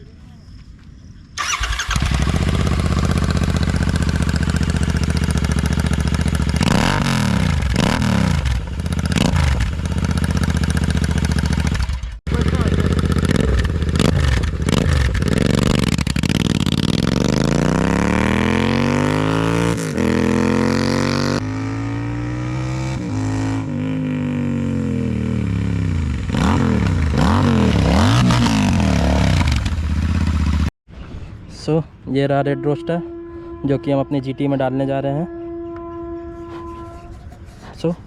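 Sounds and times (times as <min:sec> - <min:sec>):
motorcycle engine revving: 0:01.4 - 0:30.7.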